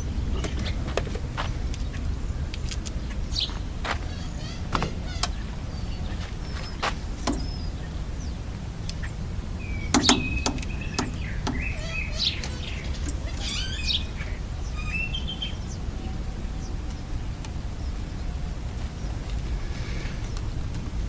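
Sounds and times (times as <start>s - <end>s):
birds chirping: 0.0s - 21.0s
steady low rumble: 0.0s - 21.0s
sharp clicks: 9.9s - 11.7s.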